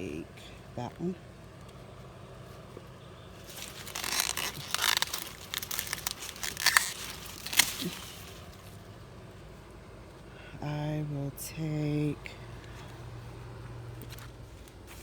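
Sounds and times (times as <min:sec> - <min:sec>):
dry corn leaves rustling: 0:00.0 - 0:10.8, 0:11.9 - 0:15.0
corn stalk cracking: 0:03.4 - 0:08.9.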